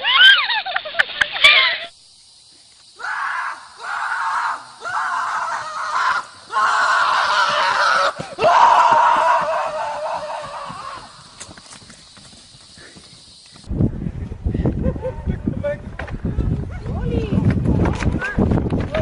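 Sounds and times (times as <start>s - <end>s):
person screaming: 3.0s - 11.2s.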